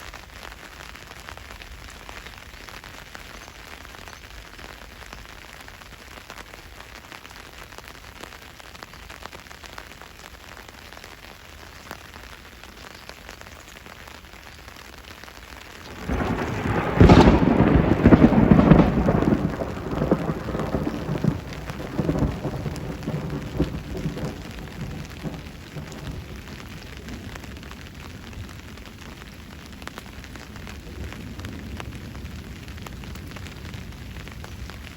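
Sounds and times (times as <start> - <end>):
steady rain falling: 0.0 - 34.9
loud thunderclap rumbling: 15.8 - 29.0.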